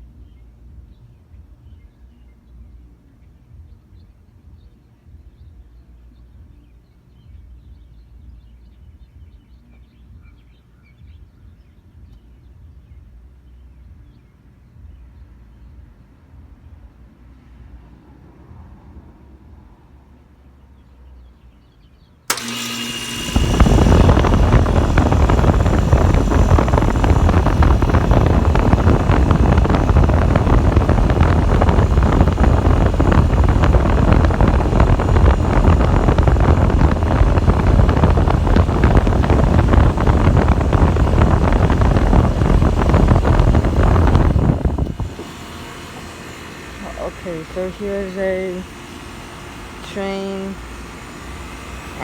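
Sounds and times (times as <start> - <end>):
compressor and fan running: 22.2 - 52.0
switch-on with brief hum: 22.3 - 52.0.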